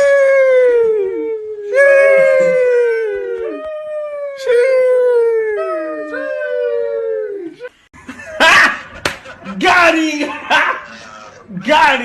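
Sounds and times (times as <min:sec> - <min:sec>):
dog howling: 0:00.0 - 0:07.7.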